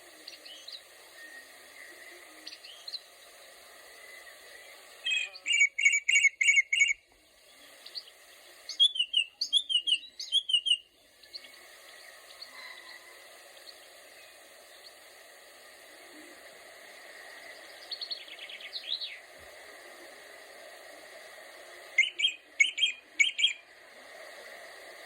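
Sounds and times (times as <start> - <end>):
faint background hiss: 0.0 - 25.0
songbird singing: 0.2 - 3.2, 4.0 - 13.0, 17.2 - 19.3, 22.0 - 23.9.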